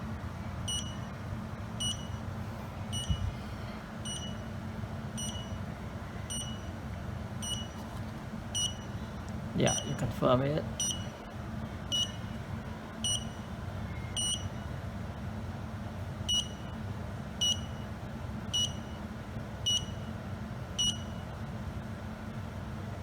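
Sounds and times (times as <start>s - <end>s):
low steady hum: 0.0s - 23.0s
short high-pitched beeps: 0.7s - 1.1s, 1.8s - 2.3s, 2.9s - 3.3s, 4.1s - 4.4s, 5.2s - 5.6s, 6.3s - 6.7s, 7.4s - 7.8s, 8.6s - 8.9s, 9.7s - 10.0s, 10.8s - 11.2s, 11.9s - 12.3s, 13.0s - 14.6s, 18.6s - 19.0s, 20.8s - 21.2s.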